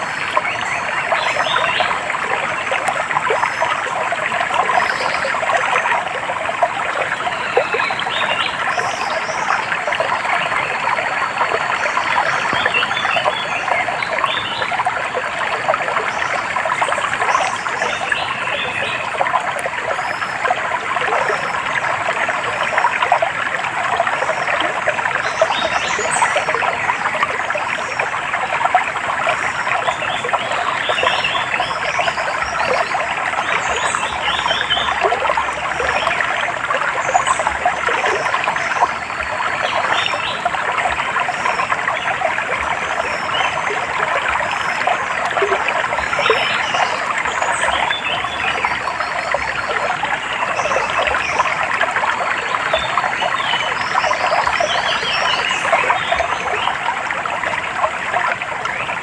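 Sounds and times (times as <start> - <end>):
stream trickling: 0.0 - 59.0.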